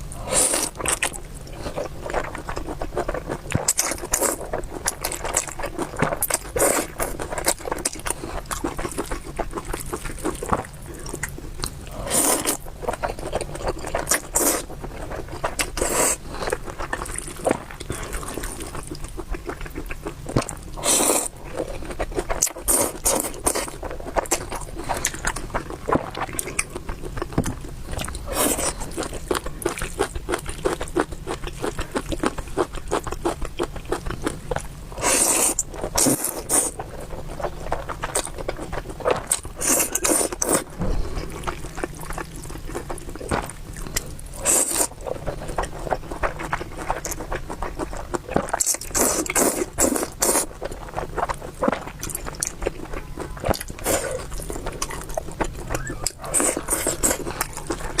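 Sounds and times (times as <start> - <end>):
wet chewing and mouth clicks: 0.1 - 58.0
noisy slurp: 11.9 - 14.7, 20.3 - 26.7, 35.0 - 36.9, 37.6 - 52.8.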